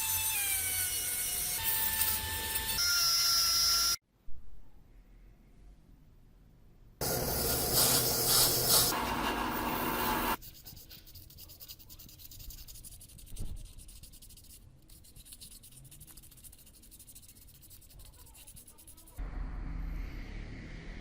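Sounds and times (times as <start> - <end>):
rubbing and scratching strokes: 7.1 - 19.2.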